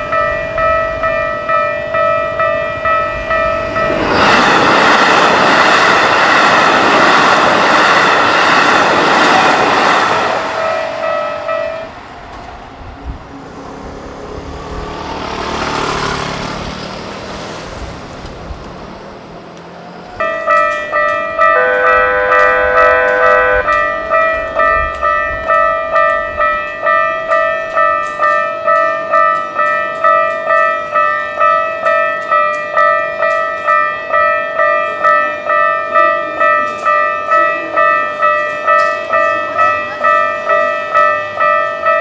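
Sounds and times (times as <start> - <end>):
level crossing warning bell: 0.0 - 17.2, 19.8 - 42.0
train rushing past: 0.0 - 42.0
second bell tone: 20.2 - 42.0.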